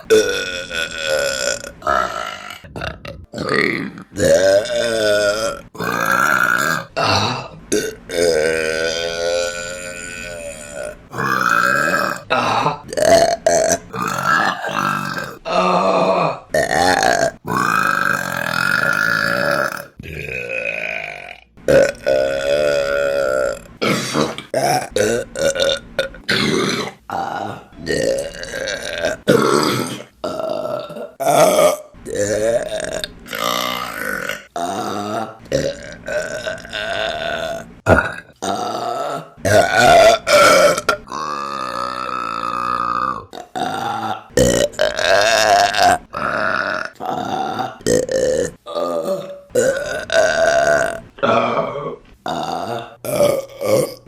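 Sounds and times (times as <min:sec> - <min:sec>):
women burping: 0:00.0 - 0:54.0.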